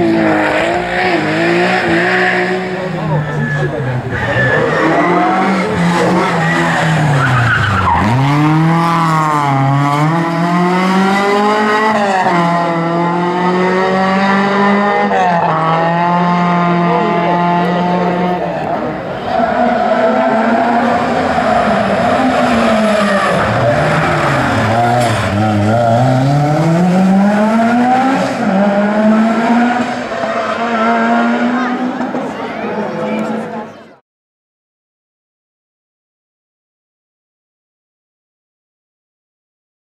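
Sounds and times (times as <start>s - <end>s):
car engine at high revs: 0.0s - 3.4s, 4.8s - 32.3s
tyres skidding and squealing: 0.2s - 12.4s, 16.8s - 34.0s.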